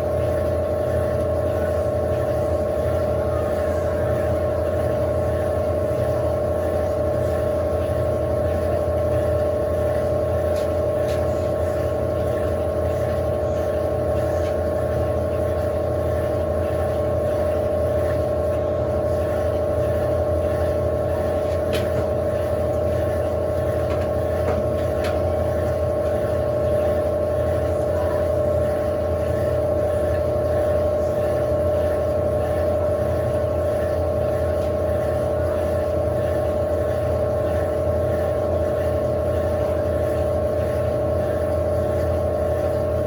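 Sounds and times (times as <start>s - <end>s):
washing machine drum spinning: 0.0s - 43.0s.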